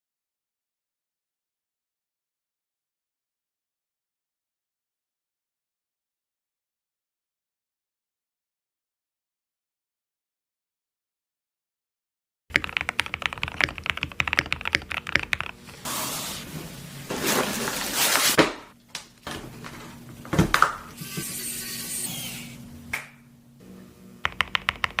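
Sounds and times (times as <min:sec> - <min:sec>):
mechanical keyboard typing: 0:12.5 - 0:15.8, 0:24.2 - 0:25.0.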